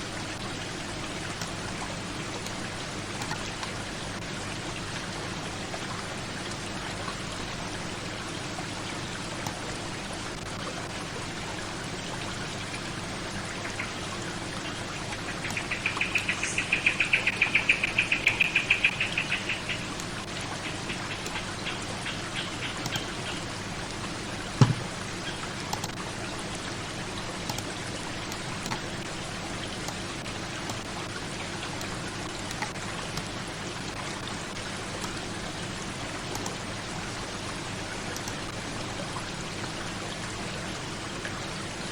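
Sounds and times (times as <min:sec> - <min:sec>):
steady rain or running water: 0:00.0 - 0:41.9
sharp knock: 0:24.6 - 0:25.0.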